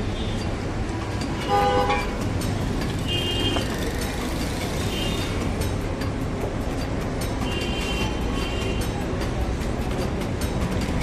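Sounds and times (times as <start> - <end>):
street traffic rumbling: 0.0 - 11.0
vehicle horn honking: 1.4 - 2.2, 3.1 - 3.7.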